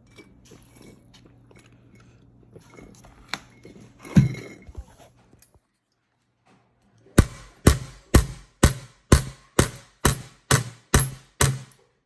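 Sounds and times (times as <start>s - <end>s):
percussive beat of sharp hits: 7.2s - 11.8s.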